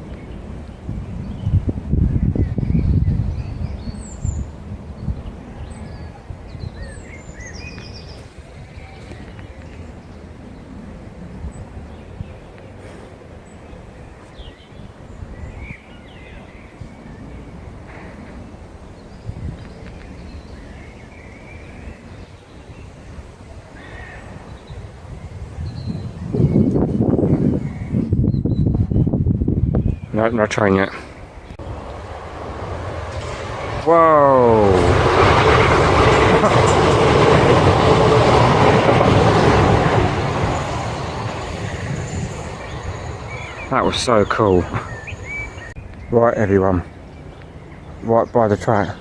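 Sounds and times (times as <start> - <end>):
passenger train passing: 0.0 - 28.0, 30.3 - 49.0
birds chirping: 0.0 - 49.0
low rumble: 31.5 - 45.8.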